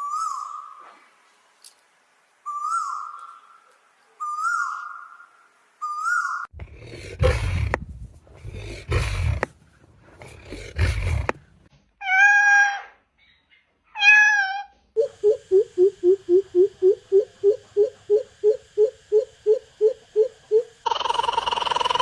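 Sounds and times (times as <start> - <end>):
steady call: 15.0 - 22.0.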